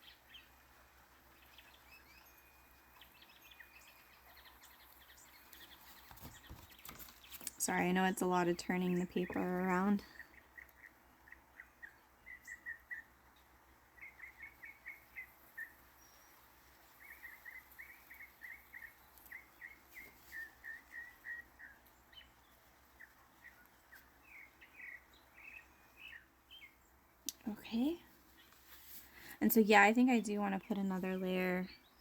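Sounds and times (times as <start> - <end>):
faint bird chirping: 0.0 - 32.0.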